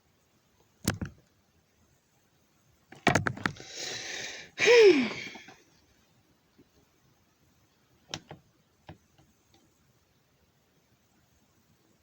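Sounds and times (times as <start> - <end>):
loud voiced exhale: 3.6 - 5.6
person breathing in deeply: 3.6 - 5.6.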